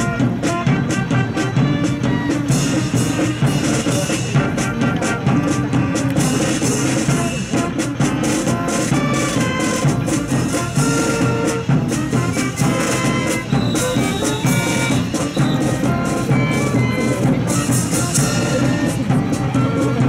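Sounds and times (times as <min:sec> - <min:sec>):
held brass-like tones: 0:00.0 - 0:20.0
steady drum beat: 0:00.0 - 0:20.0.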